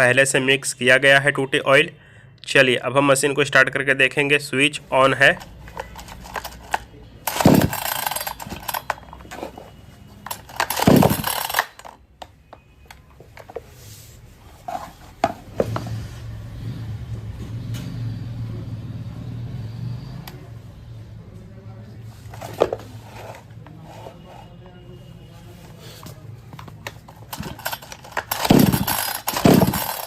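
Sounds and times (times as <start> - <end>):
recoil starter cord yanks: 5.4 - 9.4, 10.2 - 12.0, 26.8 - 30.0
chainsaw engine running: 7.3 - 8.7, 10.6 - 11.6, 27.3 - 30.0.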